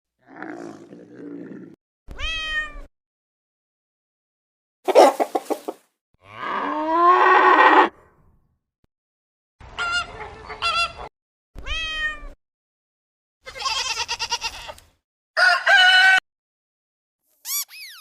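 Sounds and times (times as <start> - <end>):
animal calls: 4.9 - 5.8.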